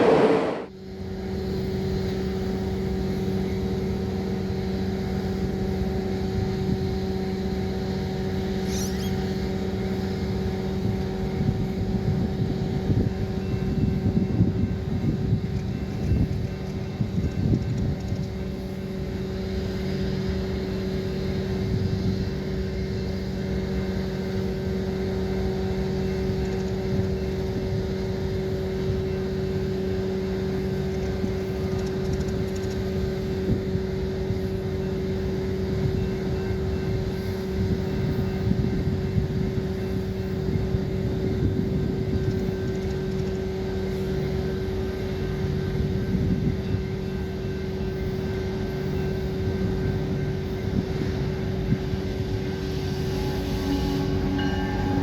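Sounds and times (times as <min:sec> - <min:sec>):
machinery humming: 0:00.0 - 0:00.7, 0:32.9 - 0:55.0.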